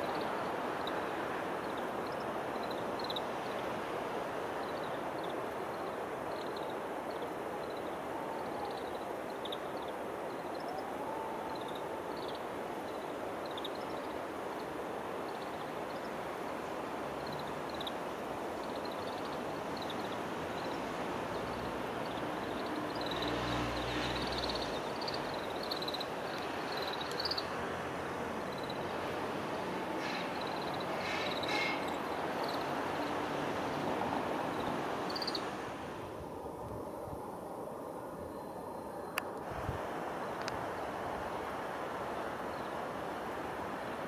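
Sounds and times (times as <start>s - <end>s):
finches chirping: 0.0s - 3.6s, 18.6s - 27.5s, 30.0s - 35.5s
steady rushing noise: 0.0s - 44.0s.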